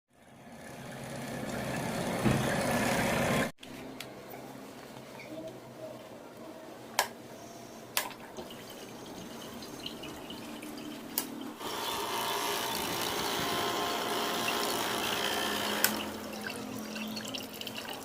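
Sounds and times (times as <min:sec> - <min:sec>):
water running: 0:08.2 - 0:11.6, 0:15.6 - 0:18.0.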